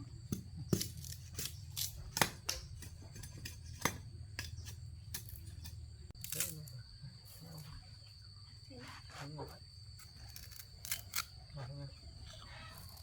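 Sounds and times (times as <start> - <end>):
dry stalks snapping: 10.0 - 11.4.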